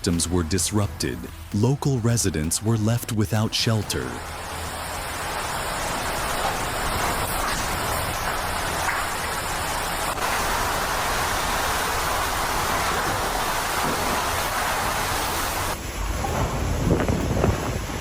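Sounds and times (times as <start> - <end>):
driving rain: 0.0 - 18.0
strong wind rushing: 3.9 - 18.0.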